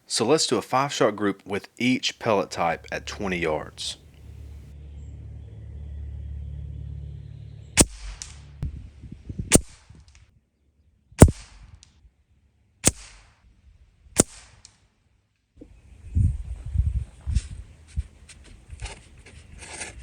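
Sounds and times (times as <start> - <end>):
air rifle shots: 7.8 - 8.4, 9.5 - 9.8, 11.2 - 11.8, 12.8 - 13.4, 14.2 - 14.7.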